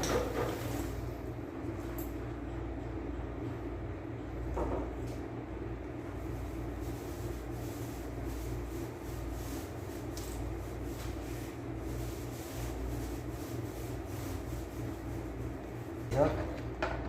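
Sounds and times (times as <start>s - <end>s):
steady low hum: 0.0s - 17.0s
rubbing and handling noises: 6.2s - 16.1s.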